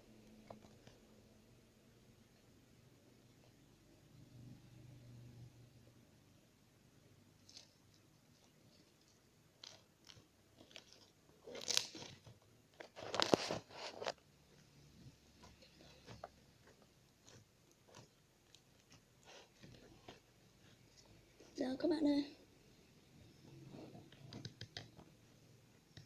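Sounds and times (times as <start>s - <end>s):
slime clicking and crackling: 7.4s - 14.2s, 15.4s - 20.3s.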